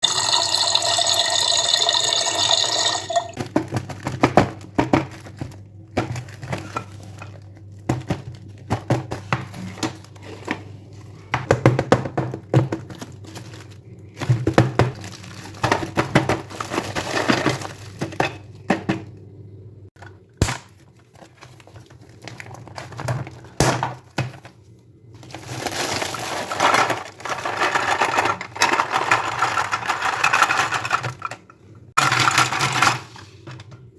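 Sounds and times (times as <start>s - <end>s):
packaging crinkling: 12.8s - 18.1s, 25.1s - 30.1s.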